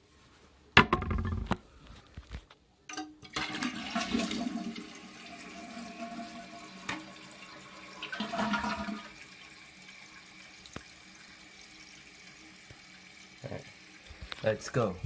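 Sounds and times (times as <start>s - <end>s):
toilet flush click: 2.9s - 9.4s
toilet tank refilling: 2.9s - 15.0s
water rushing from toilet tank: 3.2s - 15.0s.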